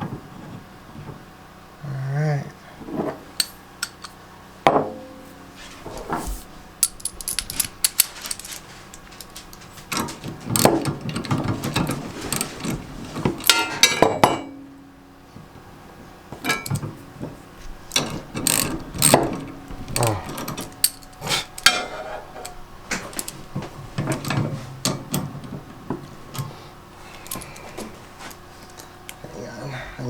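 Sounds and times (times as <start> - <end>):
metal parts and tools clinking: 3.4 - 4.2, 6.8 - 14.6, 16.4 - 17.0, 17.8 - 29.2.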